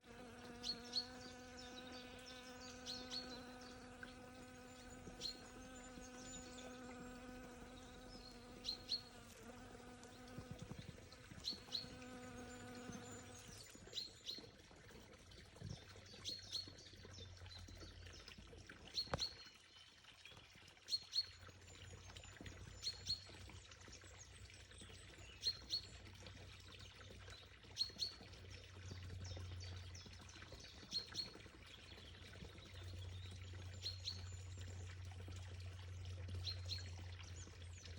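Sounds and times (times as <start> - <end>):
bee buzzing: 0.0 - 13.5
faint running water: 0.0 - 37.9
birds chirping: 0.1 - 14.4.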